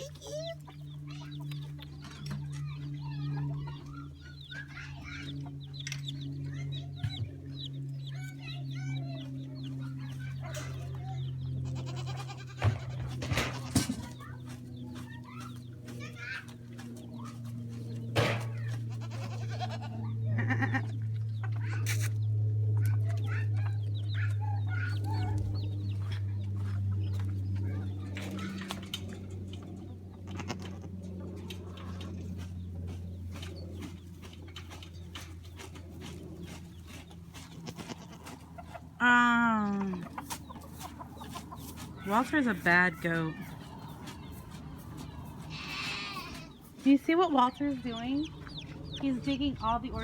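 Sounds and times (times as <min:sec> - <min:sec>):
chickens clucking: 0:00.0 - 0:50.0
steady low hum: 0:00.0 - 0:50.0.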